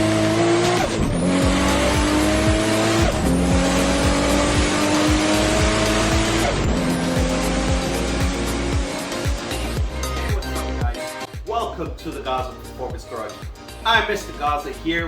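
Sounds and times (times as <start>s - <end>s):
car engine accelerating hard: 0.0s - 10.7s.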